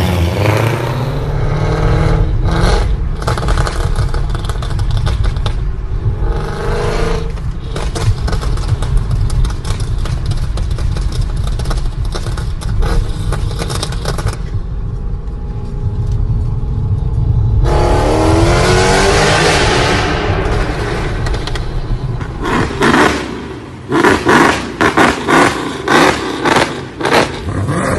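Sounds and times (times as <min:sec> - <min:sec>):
car engine revving: 0:00.0 - 0:10.4, 0:11.0 - 0:27.9
exhaust crackling and popping: 0:02.1 - 0:27.7.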